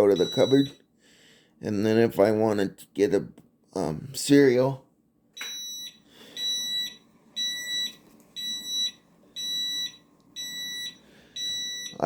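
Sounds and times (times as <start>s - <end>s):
high-pitched warning beeps: 0.0s - 0.8s, 5.4s - 12.0s.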